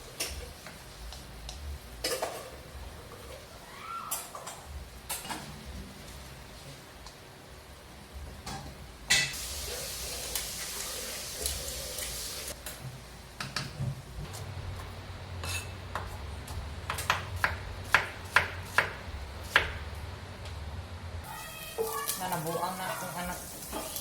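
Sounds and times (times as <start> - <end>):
chicken wings sizzling: 9.2 - 12.6, 21.2 - 24.0.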